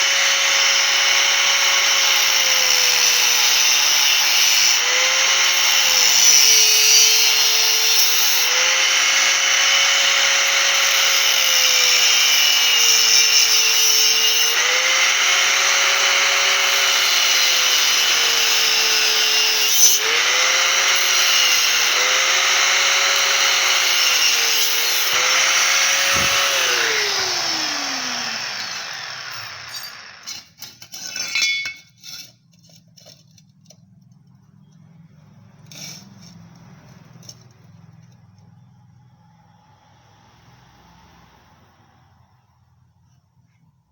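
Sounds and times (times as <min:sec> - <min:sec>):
cutting disc cutting steel pipe: 0:00.0 - 0:33.4.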